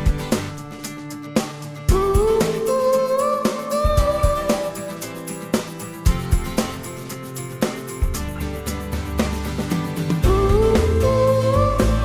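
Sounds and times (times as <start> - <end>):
guitar: 0.0 - 12.0
steady drum beat: 0.0 - 12.0.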